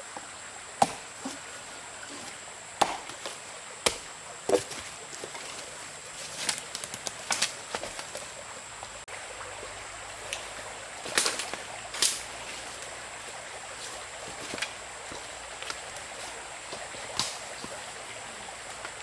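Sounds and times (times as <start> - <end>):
steady background hiss: 0.0 - 19.0
blade chopping wood: 0.8 - 1.4, 2.2 - 5.4.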